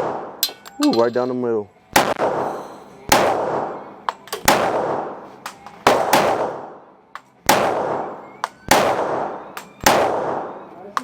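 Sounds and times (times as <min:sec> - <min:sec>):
pistol shots with echo: 0:00.0 - 0:00.5, 0:01.9 - 0:02.5, 0:03.1 - 0:10.8.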